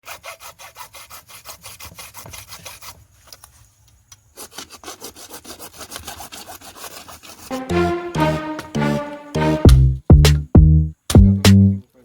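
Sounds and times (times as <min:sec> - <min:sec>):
hand saw cutting plastic pipe: 0:00.0 - 0:03.4, 0:04.4 - 0:07.5.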